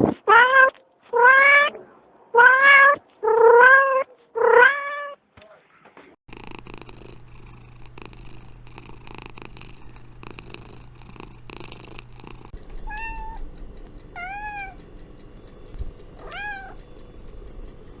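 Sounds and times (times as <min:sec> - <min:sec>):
cat purring: 0:06.3 - 0:18.0
kitten mewing: 0:12.6 - 0:13.5.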